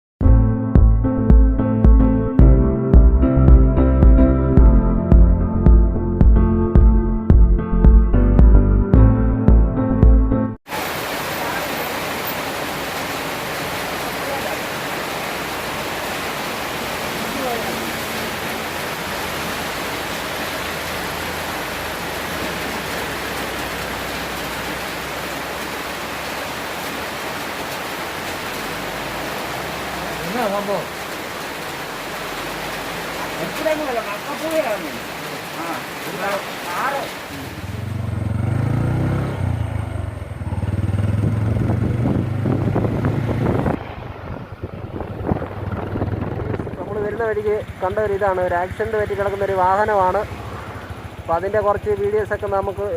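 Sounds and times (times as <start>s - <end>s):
waterfall rushing: 10.7s - 41.0s.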